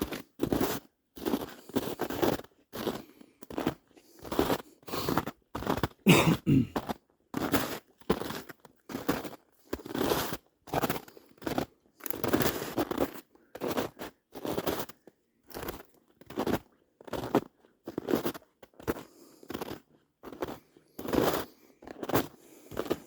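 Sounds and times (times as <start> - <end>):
footsteps through swamp: 6.8 - 23.0.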